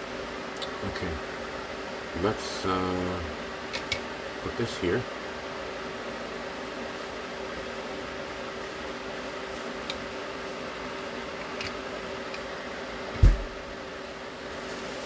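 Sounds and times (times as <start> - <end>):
fan-like hum: 0.0 - 15.0
loud low thump: 13.2 - 13.7.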